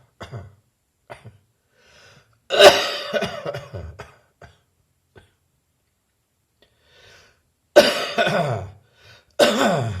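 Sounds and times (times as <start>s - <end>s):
person coughing harshly: 0.1s - 1.4s, 2.5s - 5.4s, 7.8s - 8.8s, 9.4s - 10.0s
faint breath in: 1.6s - 2.4s, 6.6s - 7.5s, 8.8s - 9.4s.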